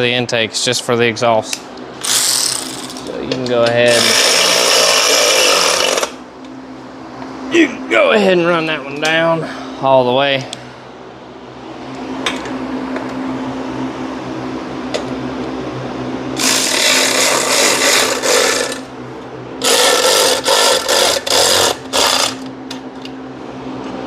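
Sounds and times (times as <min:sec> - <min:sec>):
electric ratchet whining: 0:02.0 - 0:03.0, 0:03.9 - 0:06.2, 0:16.4 - 0:18.9, 0:19.6 - 0:22.5.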